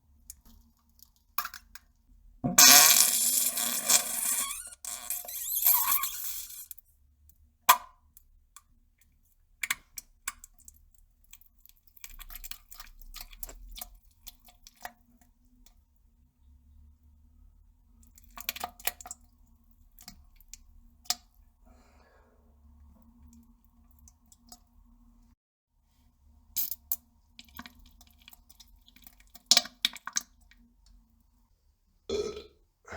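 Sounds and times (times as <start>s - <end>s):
wet squishes and drips: 0.2s - 2.0s, 8.1s - 15.8s, 18.0s - 21.6s, 22.9s - 24.9s, 26.5s - 31.0s
person defecating into toilet: 2.5s - 6.7s, 32.1s - 32.9s.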